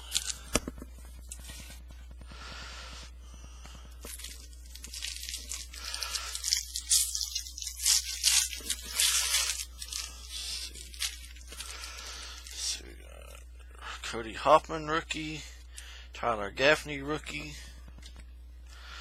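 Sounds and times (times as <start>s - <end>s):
foil wrapper tearing and crinkling: 0.0s - 1.7s, 4.0s - 12.6s.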